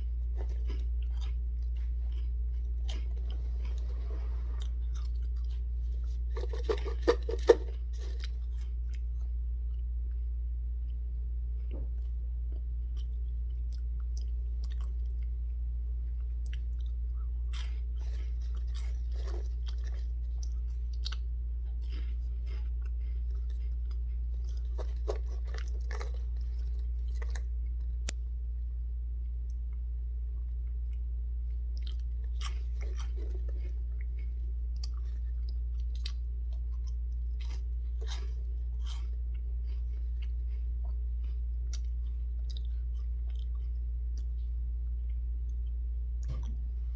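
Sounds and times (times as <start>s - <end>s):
crunching cheese puffs: 0.0s - 11.0s, 11.6s - 28.2s, 30.5s - 46.7s
steady low hum: 0.0s - 46.9s.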